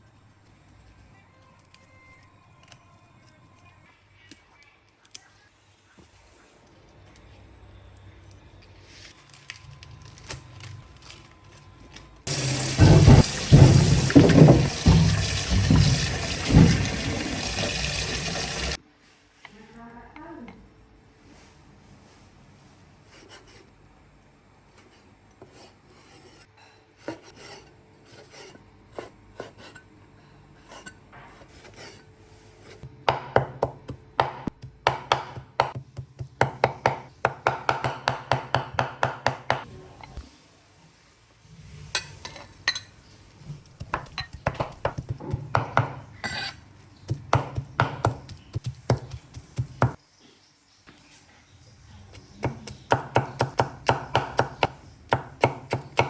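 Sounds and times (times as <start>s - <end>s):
knife scrapes: 24.7s - 29.9s, 30.6s - 32.9s, 46.1s - 46.8s
knife chopping on cutting board: 33.1s - 39.6s, 43.8s - 50.0s, 52.4s - 56.0s.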